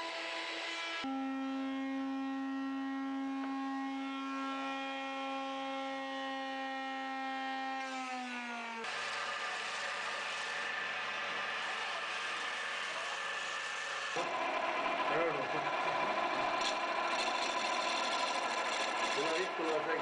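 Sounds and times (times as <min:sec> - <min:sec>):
electric motor humming: 0:08.8 - 0:20.0.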